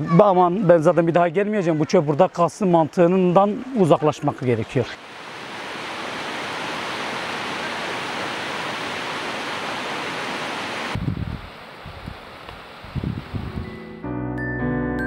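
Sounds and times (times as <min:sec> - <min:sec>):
stream water rushing over rocks: 0:02.0 - 0:11.0.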